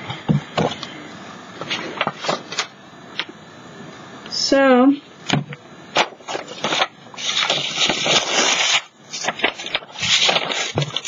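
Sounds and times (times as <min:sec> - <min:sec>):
paper crackling and rustling: 0:01.6 - 0:02.7, 0:06.0 - 0:11.0.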